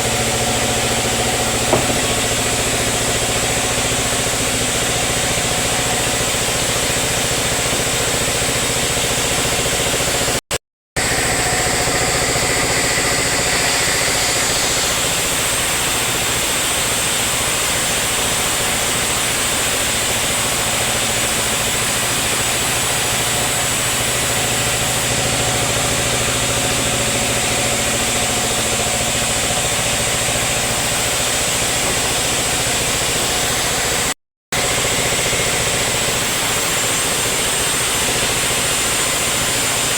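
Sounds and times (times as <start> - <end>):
sawmill machinery droning: 0.0 - 10.4, 11.0 - 39.9.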